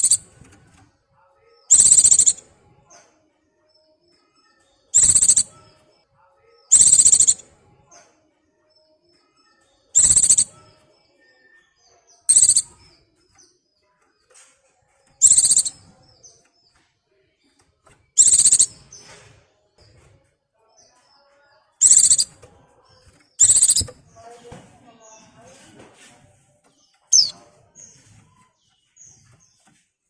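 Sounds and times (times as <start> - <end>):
bird high-pitched calls: 0.0 - 0.2, 1.7 - 2.4, 4.9 - 5.6, 6.7 - 7.4, 10.0 - 10.6, 12.3 - 12.8, 15.2 - 15.8, 18.2 - 18.8, 21.8 - 22.3, 23.4 - 24.0, 27.1 - 27.4
faint bird chirps: 0.0 - 0.8, 1.7 - 3.0, 3.7 - 16.8, 18.1 - 20.1, 20.8 - 24.3, 26.8 - 29.8.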